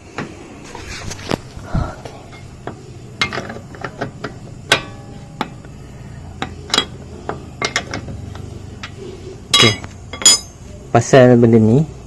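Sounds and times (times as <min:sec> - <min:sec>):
wheel brace clinking on wheel nuts: 0:02.3 - 0:10.7.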